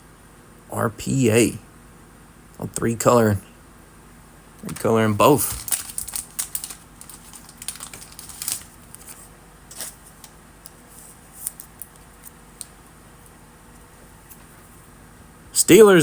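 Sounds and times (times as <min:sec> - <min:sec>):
trading cards rustling: 0:04.6 - 0:12.8.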